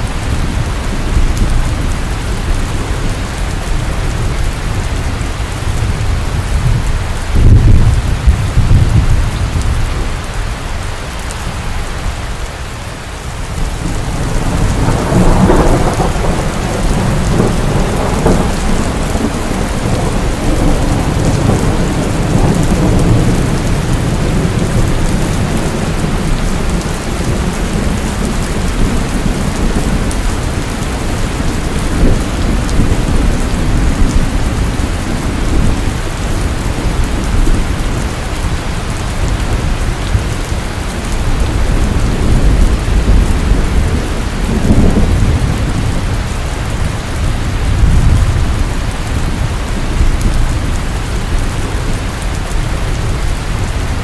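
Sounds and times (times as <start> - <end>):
low rumble of thunder: 0.0 - 10.4, 13.4 - 54.0
steady rain falling: 0.0 - 54.0.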